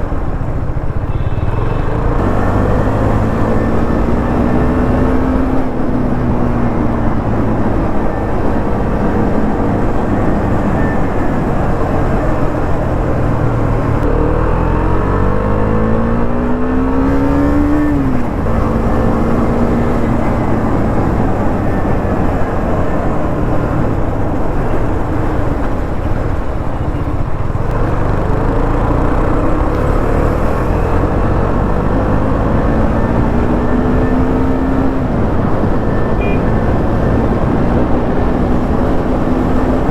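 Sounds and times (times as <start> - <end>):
heavy steady rushing noise: 17.1 - 39.9.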